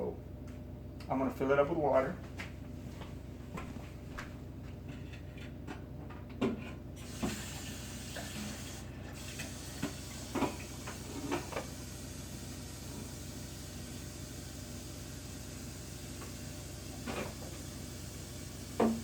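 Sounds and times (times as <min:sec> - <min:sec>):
faucet water running: 0:07.0 - 0:19.0.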